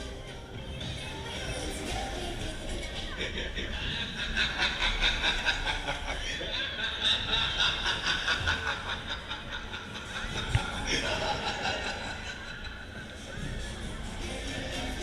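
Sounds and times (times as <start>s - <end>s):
fairground ride running: 0.0s - 15.0s
riders laughing: 3.0s - 13.7s.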